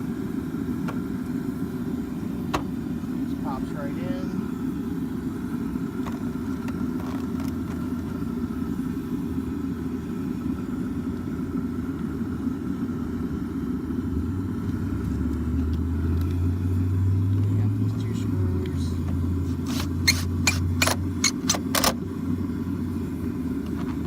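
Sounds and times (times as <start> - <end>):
vehicle engine idling: 0.0 - 24.0
deep hum: 1.6 - 21.4.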